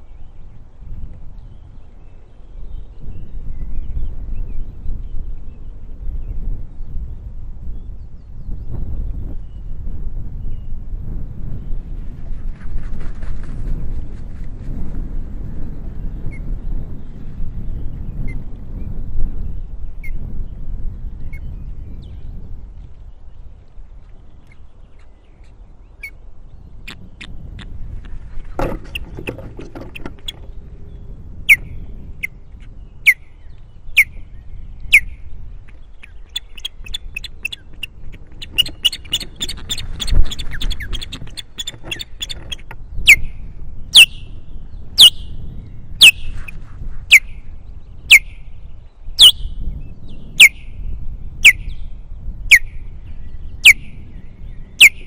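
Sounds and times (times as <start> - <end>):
osprey alarm calls: 28.8 - 30.4, 36.0 - 43.3.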